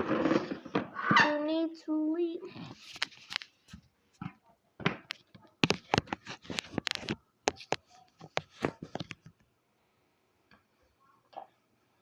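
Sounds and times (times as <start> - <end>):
plastic toys clicking and tapping: 4.2 - 9.4.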